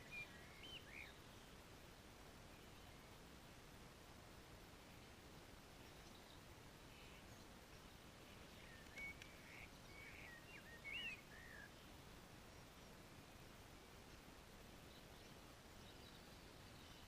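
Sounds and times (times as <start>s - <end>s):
songbird chirps and whistles: 0.0s - 1.2s, 8.4s - 11.9s
low steady hiss: 0.0s - 17.0s.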